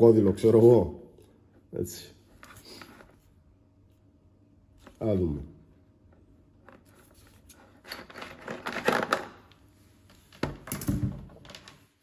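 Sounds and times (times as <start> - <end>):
tool accessories clicking and rustling: 7.4 - 9.4.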